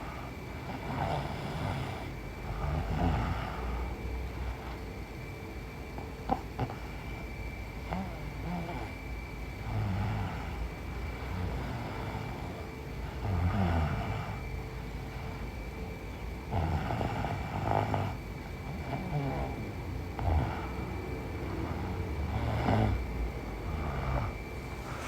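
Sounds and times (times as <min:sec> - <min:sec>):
woman snoring: 0:00.0 - 0:04.8, 0:06.2 - 0:15.4, 0:16.0 - 0:25.0.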